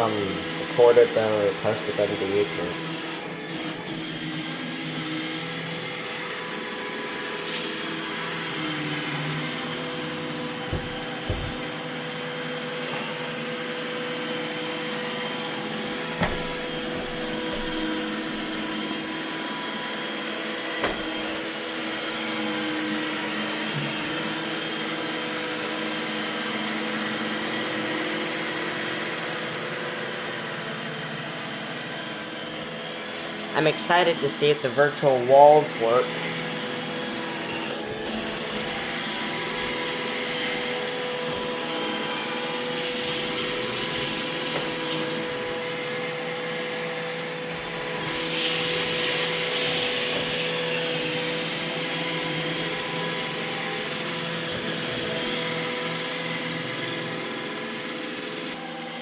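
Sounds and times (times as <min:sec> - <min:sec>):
robot vacuum whirring: 0:00.0 - 0:29.4, 0:30.2 - 0:59.0
robot vacuum knocks: 0:10.6 - 0:11.7, 0:16.2 - 0:17.9, 0:20.8 - 0:21.1.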